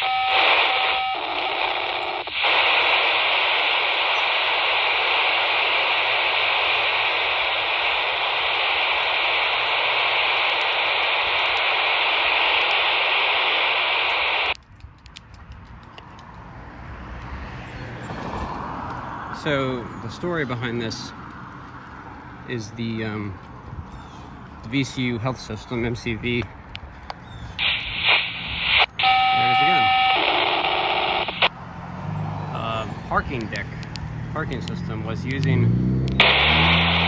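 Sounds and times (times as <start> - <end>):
harsh digital hiss from radio: 0.0 - 14.6, 27.6 - 31.5, 34.4 - 37.0.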